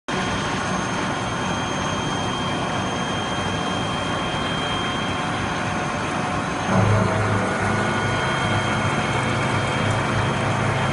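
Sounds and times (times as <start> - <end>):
high machine whine: 0.1 - 10.9.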